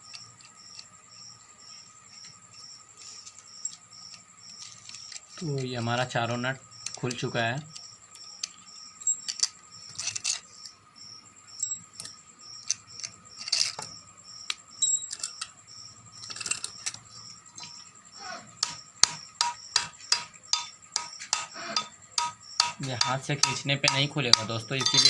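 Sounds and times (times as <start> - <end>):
casing being tapped: 18.6 - 25.0
metal clicks and knocks: 18.6 - 25.0.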